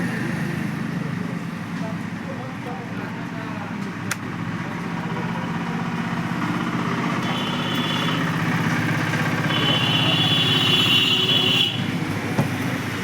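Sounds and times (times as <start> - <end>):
vehicle engine humming: 3.2 - 13.0.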